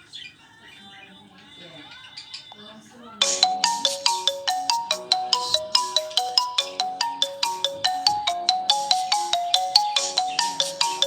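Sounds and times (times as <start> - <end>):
phone ringtone melody: 3.2 - 11.0.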